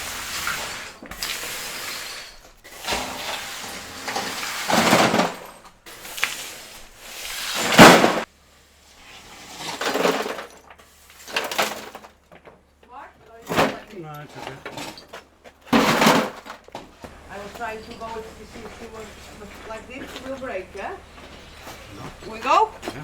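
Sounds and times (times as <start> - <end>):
rubble scraping and clattering: 0.0 - 8.3, 8.9 - 23.0.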